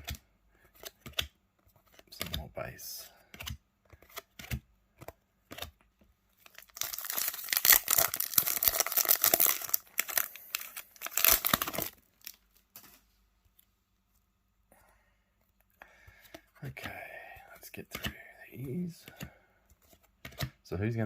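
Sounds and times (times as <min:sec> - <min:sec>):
wrapper tearing and crinkling: 0:06.4 - 0:13.0.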